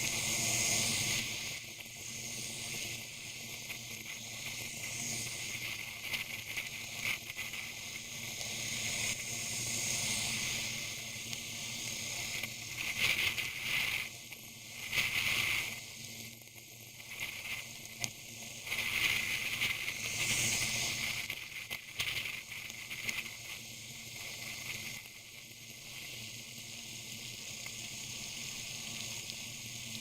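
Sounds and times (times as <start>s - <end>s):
rain hiss on helmet: 0.0s - 30.0s
wind hiss on helmet: 0.0s - 30.0s.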